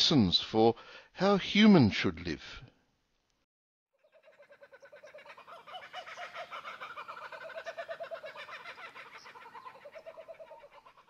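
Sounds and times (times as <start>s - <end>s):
birds chattering: 4.0s - 11.0s.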